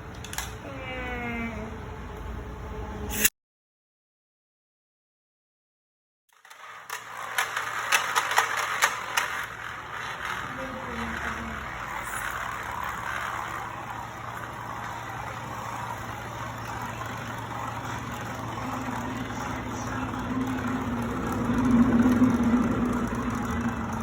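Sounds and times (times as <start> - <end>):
engine idling: 9.5 - 24.0
low tone: 17.0 - 24.0.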